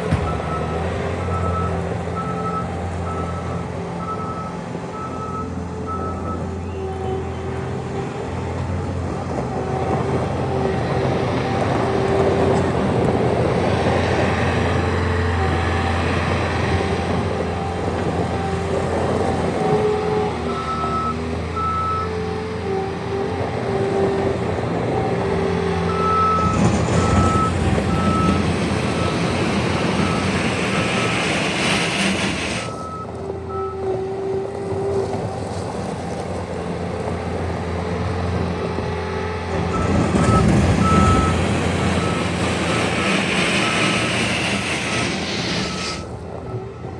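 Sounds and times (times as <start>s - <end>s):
diesel engine running: 0.0s - 46.9s
back-up alarm beeps: 25.9s - 28.4s, 39.7s - 44.1s.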